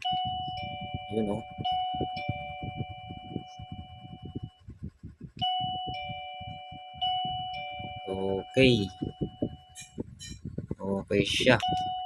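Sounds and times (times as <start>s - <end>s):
doorbell ding-dong chime: 0.0s - 4.0s, 5.4s - 9.0s.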